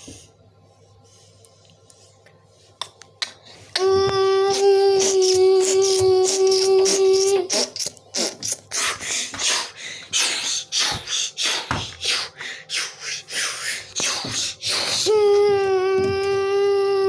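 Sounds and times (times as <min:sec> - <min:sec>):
breathy mouth sounds: 0:05.0 - 0:15.1.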